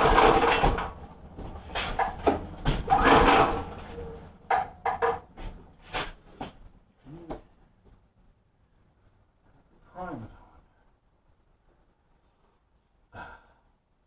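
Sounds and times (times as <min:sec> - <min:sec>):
recoil starter pull whirring: 0:00.0 - 0:05.2.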